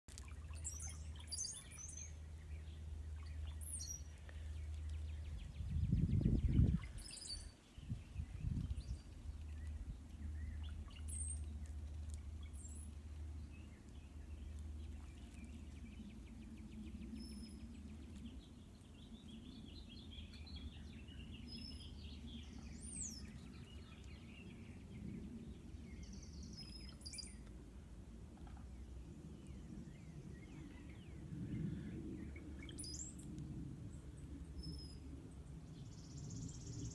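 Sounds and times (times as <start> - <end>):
low steady hum: 0.1 - 36.9
birds chirping: 0.2 - 27.5.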